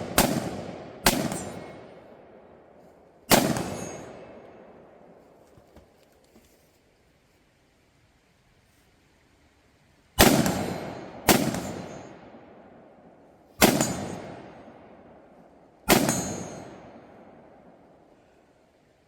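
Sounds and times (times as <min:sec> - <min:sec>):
gunshots with echo: 0:00.0 - 0:02.0, 0:03.3 - 0:04.4, 0:10.2 - 0:12.2, 0:13.6 - 0:14.8, 0:15.9 - 0:17.2.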